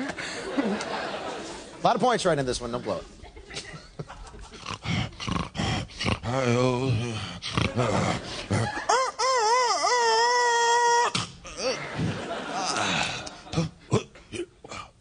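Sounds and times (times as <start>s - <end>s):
man making vocal sound effects: 4.6s - 12.0s.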